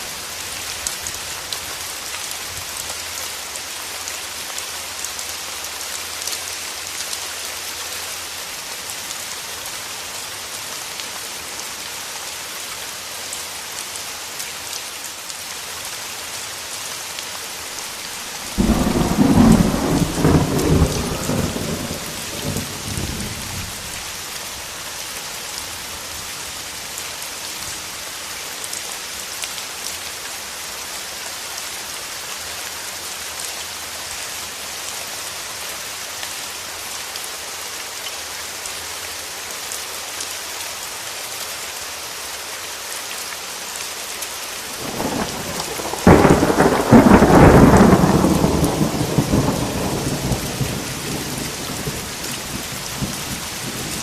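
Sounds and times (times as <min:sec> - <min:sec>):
heavy rain falling: 0:00.0 - 0:54.0
thunderclap rumbling: 0:18.4 - 0:23.8, 0:44.8 - 0:54.0.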